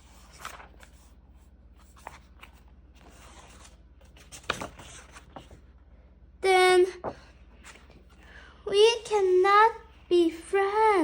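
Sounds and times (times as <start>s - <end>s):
paper rustling: 0.0s - 5.7s.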